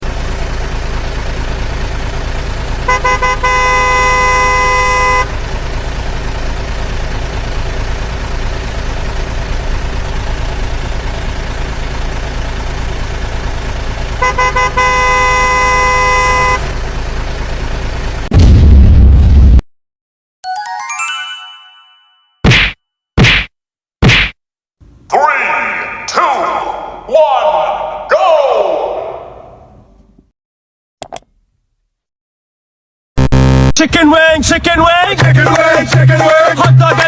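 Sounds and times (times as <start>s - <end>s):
vehicle engine rumble: 0.0s - 18.7s, 24.8s - 28.1s, 28.8s - 30.3s
horn honking: 2.8s - 5.6s, 14.0s - 16.9s
loud low boom: 18.3s - 19.6s.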